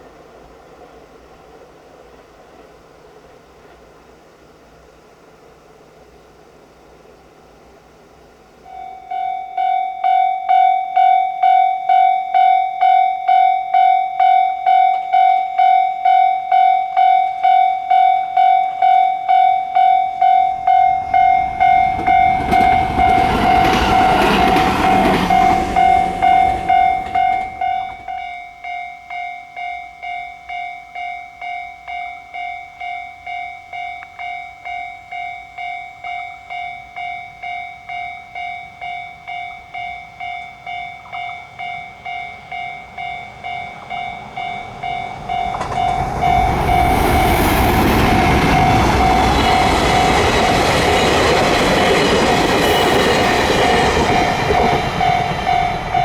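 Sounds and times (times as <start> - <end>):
train rushing past: 14.6 - 28.4, 38.8 - 56.0.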